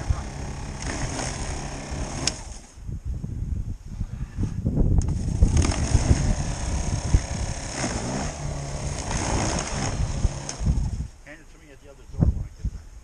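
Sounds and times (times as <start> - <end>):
electric snow shovel motor whine: 0.0 - 2.7, 5.1 - 11.0
wind rumble on microphone: 0.0 - 11.3, 11.9 - 13.0.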